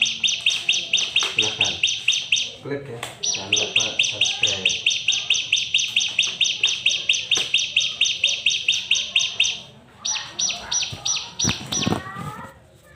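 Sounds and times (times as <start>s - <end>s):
bird singing sharp high notes: 3.2s - 11.9s.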